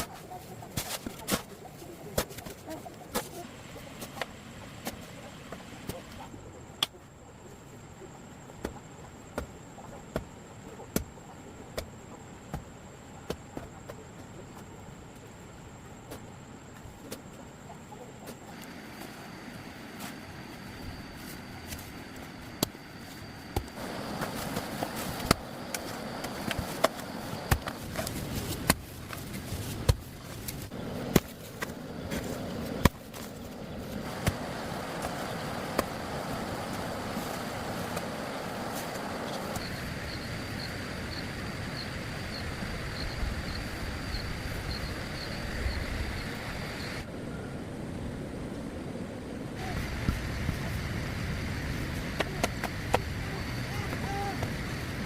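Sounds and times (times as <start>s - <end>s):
steady hiss: 14.2s - 55.0s.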